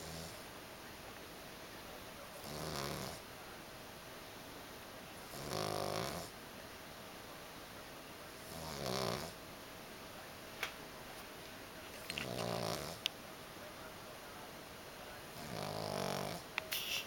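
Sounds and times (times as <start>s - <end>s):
dog snoring: 0.0s - 0.4s, 2.4s - 3.2s, 5.3s - 6.3s, 8.4s - 9.4s, 12.1s - 13.0s, 15.3s - 16.5s.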